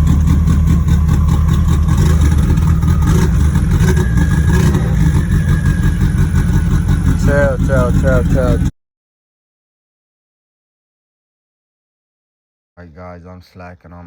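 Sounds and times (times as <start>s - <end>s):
car engine idling: 0.0s - 8.7s
car engine starting: 0.0s - 8.7s.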